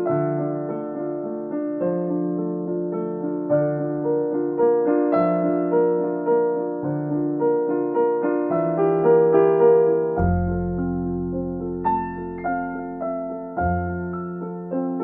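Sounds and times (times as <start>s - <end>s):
piano melody: 0.0s - 15.0s
deep bass note: 10.2s - 12.9s.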